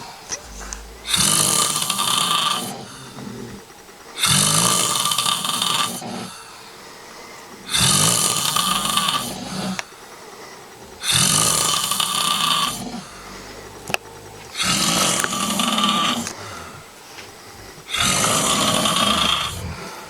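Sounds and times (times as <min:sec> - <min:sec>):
person snoring loudly: 0:00.0 - 0:03.6, 0:04.2 - 0:06.4, 0:07.7 - 0:09.9, 0:11.0 - 0:16.9, 0:17.9 - 0:20.0.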